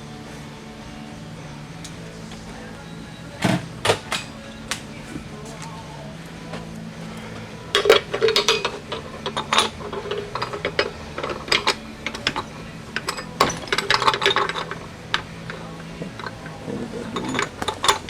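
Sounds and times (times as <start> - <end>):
metal tools clinking on steel: 7.2 - 18.0.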